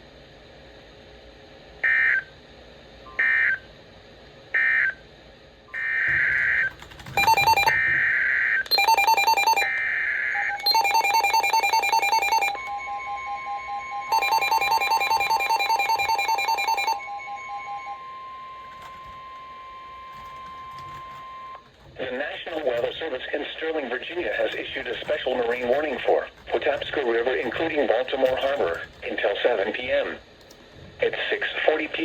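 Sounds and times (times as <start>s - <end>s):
pulsing two-tone attention signal: 7.2s - 7.8s, 8.7s - 9.7s, 10.4s - 21.6s
steady weather radio alert tone: 10.4s - 18.1s, 22.0s - 30.2s.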